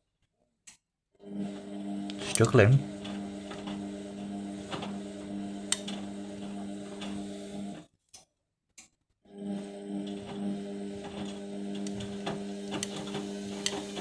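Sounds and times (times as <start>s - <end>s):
washing machine motor humming: 1.2s - 7.8s, 9.3s - 14.0s
washing machine clicks: 1.3s - 7.8s, 9.5s - 14.0s.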